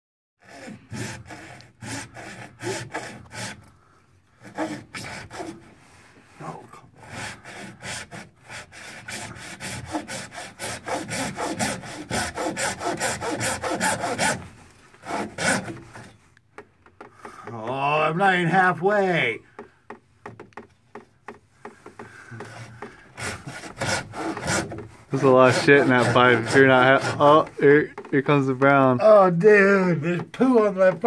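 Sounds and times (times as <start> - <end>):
saw cutting through pipe: 0.4 - 5.8, 6.4 - 16.2, 21.6 - 29.3.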